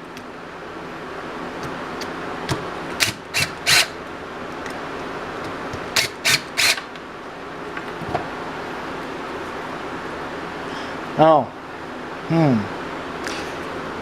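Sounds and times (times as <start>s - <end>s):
steady background hum: 0.0s - 14.0s.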